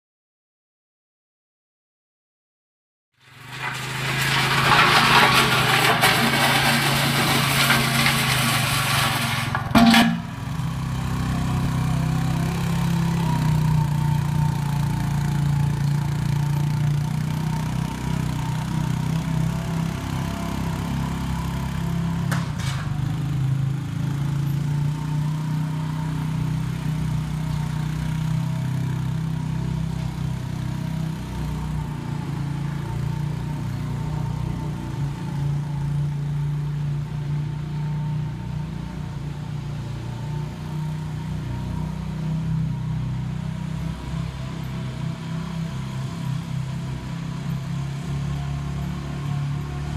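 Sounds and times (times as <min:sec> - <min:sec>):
vehicle engine running: 0:03.2 - 0:22.5.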